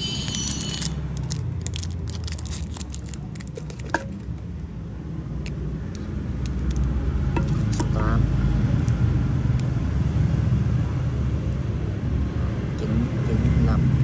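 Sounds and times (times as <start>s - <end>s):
lighter packaging clicks and crackles: 0.5s - 4.3s.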